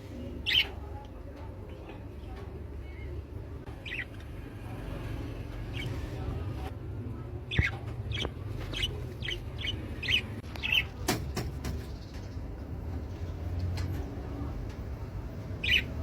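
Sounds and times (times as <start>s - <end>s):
parrot chirping: 3.7s - 4.3s, 7.5s - 11.0s, 15.4s - 16.0s.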